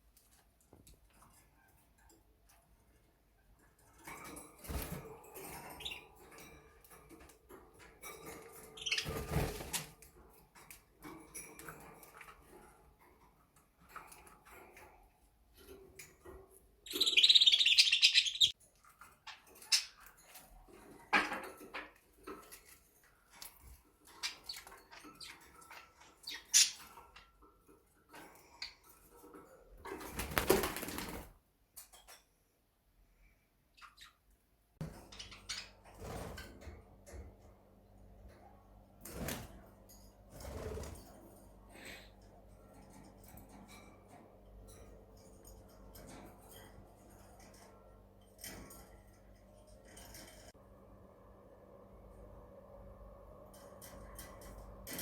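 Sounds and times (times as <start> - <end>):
wings fluttering: 8.0 - 10.1, 29.8 - 31.4, 34.8 - 36.8, 39.0 - 39.7, 40.3 - 41.2
budgerigars shrill calling: 16.9 - 18.5.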